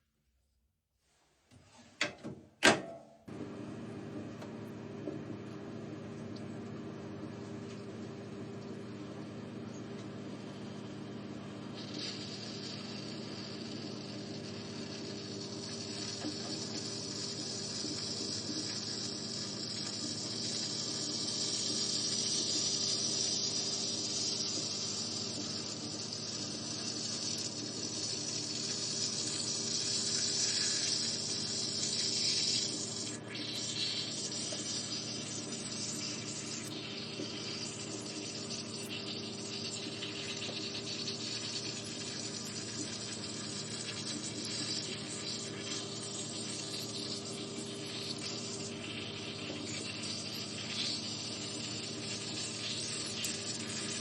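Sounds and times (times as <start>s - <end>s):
microwave oven humming: 2.0s - 54.0s
high hissing apple: 11.6s - 54.0s.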